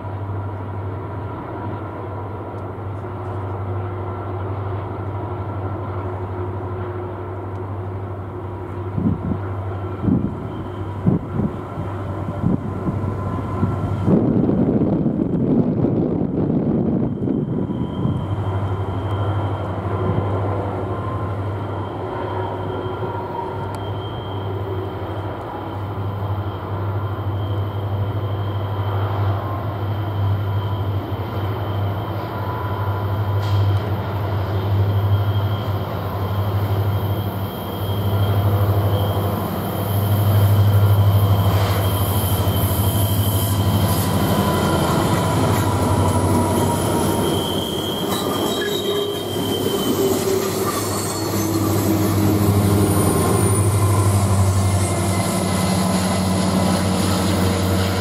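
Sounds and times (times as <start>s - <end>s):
freight train rumbling: 0.0s - 58.0s
wheel flange squeal: 17.0s - 58.0s.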